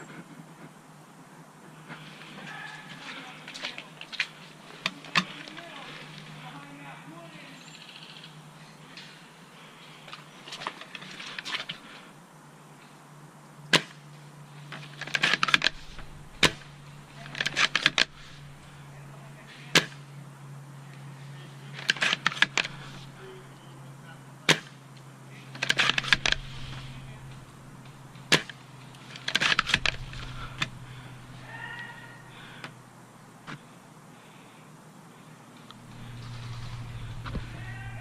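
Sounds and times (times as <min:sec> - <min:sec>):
airsoft rifle shots: 0:15.1 - 0:18.8, 0:24.4 - 0:24.8.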